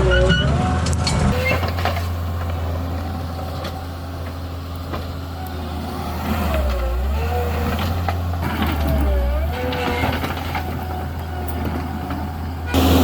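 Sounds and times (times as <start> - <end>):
diesel engine running: 0.0 - 13.0.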